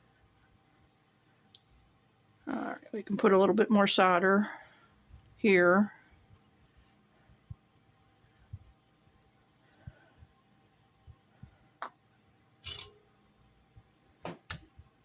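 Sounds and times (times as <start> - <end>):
soldering taps and clicks: 8.6 - 10.0, 13.5 - 14.8.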